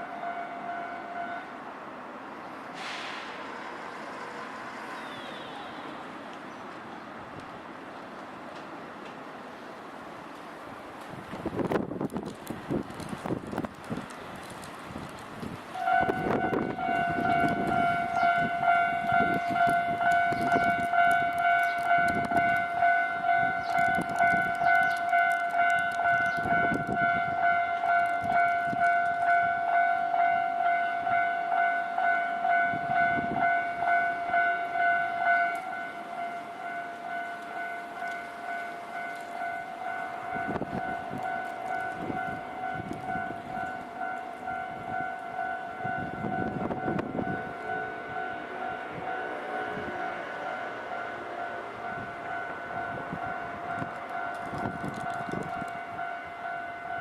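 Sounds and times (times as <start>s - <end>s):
level crossing warning bell: 0.0s - 1.6s, 15.8s - 57.0s.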